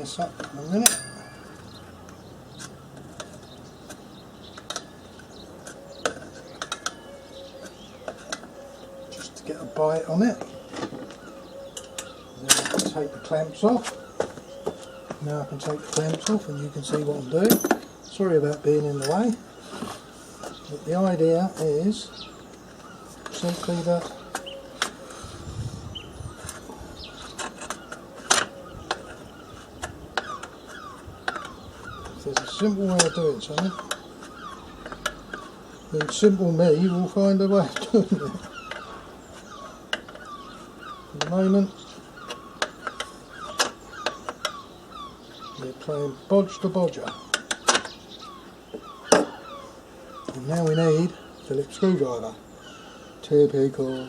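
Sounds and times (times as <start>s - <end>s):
faint birds chirping: 0.0s - 54.0s
metal tools clicking and knocking: 0.4s - 1.8s, 16.9s - 17.9s
hand tools clicking on metal: 0.4s - 4.9s, 29.8s - 34.1s.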